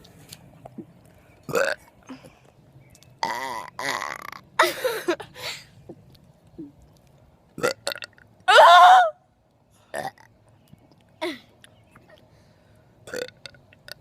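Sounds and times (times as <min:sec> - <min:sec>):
person burping: 0:01.5 - 0:01.8, 0:03.2 - 0:05.2, 0:07.6 - 0:08.2, 0:09.9 - 0:10.3, 0:13.1 - 0:14.0.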